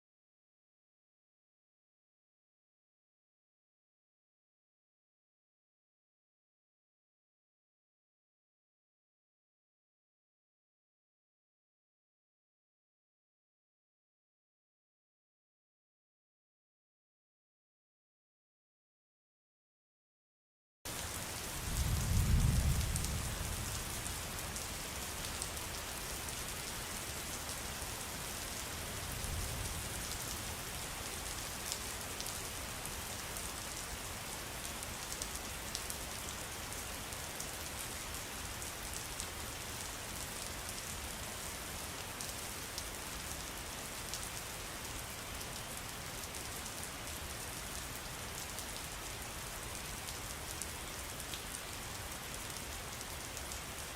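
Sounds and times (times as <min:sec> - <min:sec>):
rain falling: 0:20.9 - 0:53.9.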